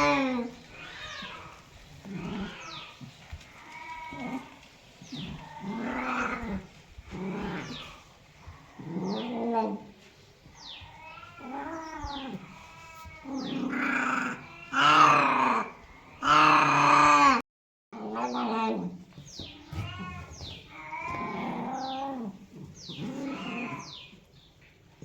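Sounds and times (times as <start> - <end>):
cat meowing: 0.0 - 2.9, 19.4 - 22.3, 23.0 - 24.0.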